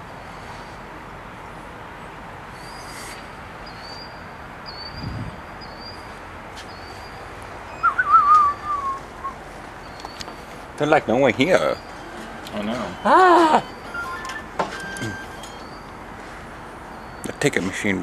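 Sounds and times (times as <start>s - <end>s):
outdoor background noise: 0.0s - 18.0s
high bird chirps: 2.6s - 6.1s, 6.7s - 10.3s, 12.8s - 16.0s
wavering bird call: 7.7s - 10.2s, 12.8s - 15.9s.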